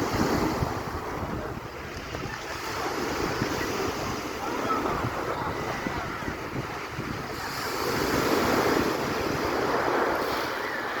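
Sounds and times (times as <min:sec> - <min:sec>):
sea surf breaking on shore: 0:00.0 - 0:11.0
wind buffeting microphone: 0:00.0 - 0:11.0.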